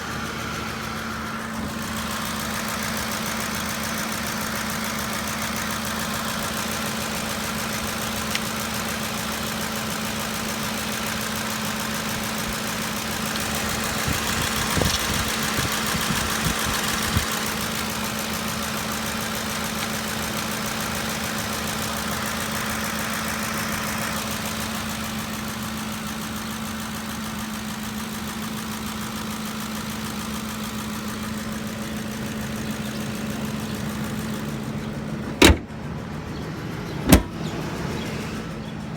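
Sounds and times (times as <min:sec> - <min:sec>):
engine idling: 0:00.0 - 0:38.9
engine ticking: 0:00.0 - 0:38.9
sharp engine knocks: 0:34.2 - 0:36.0, 0:36.9 - 0:37.8.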